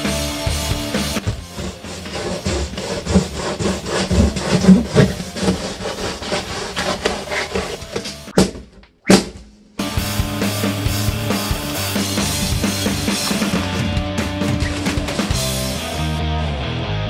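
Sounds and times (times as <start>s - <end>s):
hard objects scraping and tapping: 1.1s - 8.9s.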